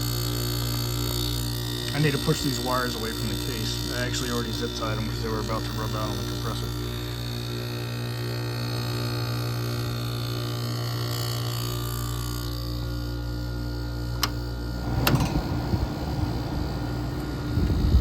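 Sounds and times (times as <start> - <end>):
air conditioner humming: 0.0 - 18.0
rough low rumble: 14.6 - 18.0.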